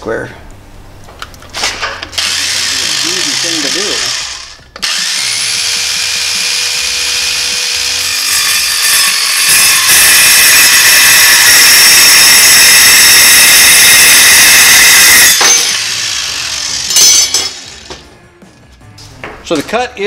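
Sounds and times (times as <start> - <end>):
metal saw cutting metal: 2.2 - 17.9.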